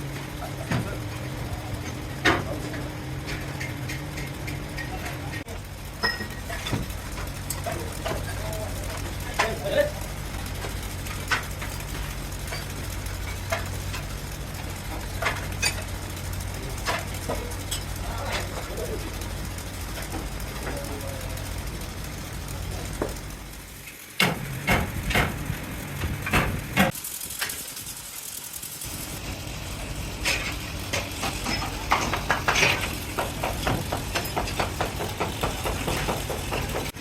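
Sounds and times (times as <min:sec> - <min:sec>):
machinery low drone: 0:00.0 - 0:26.9, 0:28.8 - 0:33.6
sharp metallic knocks: 0:24.2 - 0:26.9, 0:30.3 - 0:37.0.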